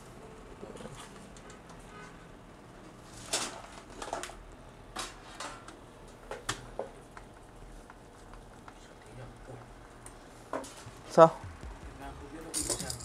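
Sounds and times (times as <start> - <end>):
small hard parts clicking: 12.5 - 13.0.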